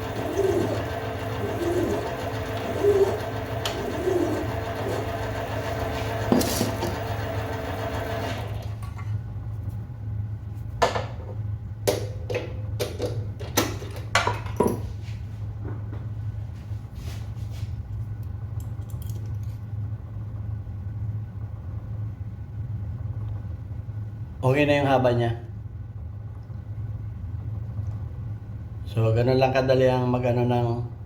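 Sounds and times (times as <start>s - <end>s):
small motor whining: 0.0s - 8.7s
steady low hum: 0.0s - 13.5s, 14.8s - 31.0s.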